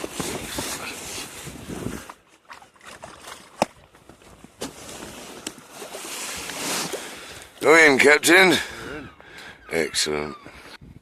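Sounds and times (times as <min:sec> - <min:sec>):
water swishing and splashing: 0:00.0 - 0:08.4.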